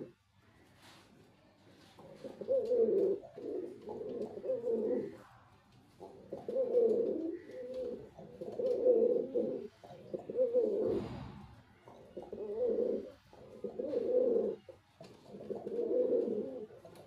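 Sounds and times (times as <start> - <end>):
pigeon cooing: 2.0 - 11.1, 11.8 - 17.0.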